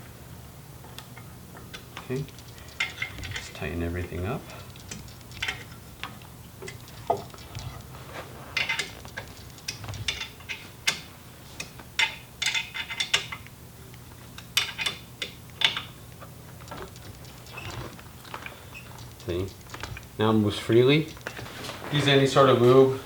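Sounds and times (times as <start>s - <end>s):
allen wrench clicking on metal: 1.7s - 13.5s, 16.6s - 21.4s.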